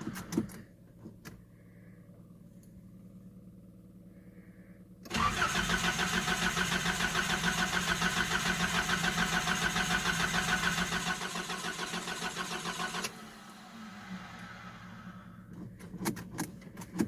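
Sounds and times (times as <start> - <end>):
engine cranking on starter: 5.0 - 16.8.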